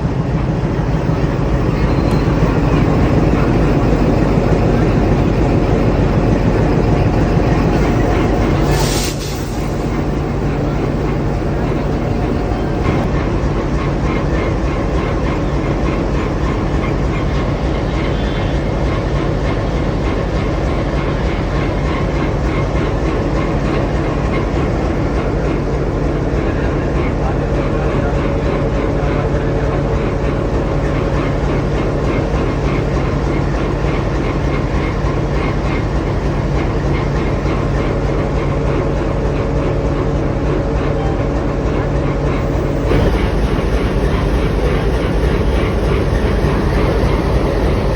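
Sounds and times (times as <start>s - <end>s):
diesel locomotive humming: 0.0s - 47.9s
train wheels clicking over rail joints: 0.1s - 47.9s
low engine hum: 38.1s - 47.9s.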